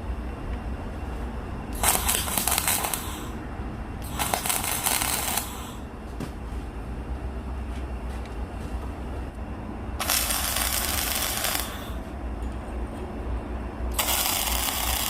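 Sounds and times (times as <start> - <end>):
steady low hum: 0.0 - 15.0
crackling arc welding bursts: 1.8 - 3.4, 4.0 - 5.8, 10.0 - 12.0, 13.9 - 15.0.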